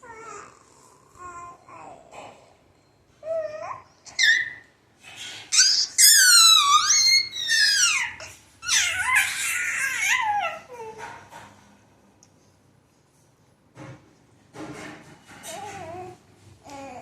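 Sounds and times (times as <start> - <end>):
baby squealing: 3.3 - 4.7, 5.4 - 11.0.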